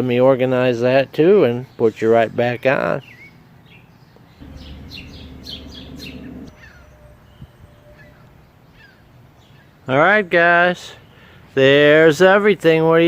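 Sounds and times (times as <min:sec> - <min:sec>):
birds chirping: 0:01.4 - 0:12.8
low steady rumble: 0:04.4 - 0:06.6.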